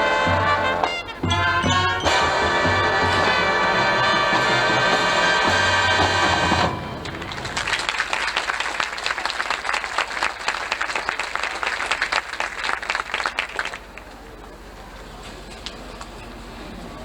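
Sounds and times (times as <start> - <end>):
crowd applauding: 5.9 - 14.7.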